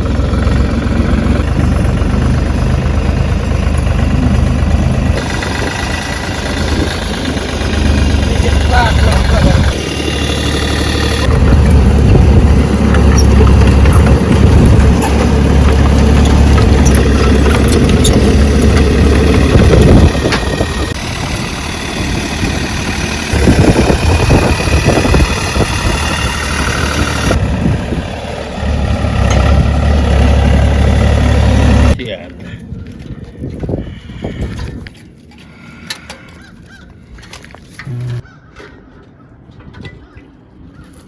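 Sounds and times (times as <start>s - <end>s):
trencher engine running: 0.0s - 32.0s.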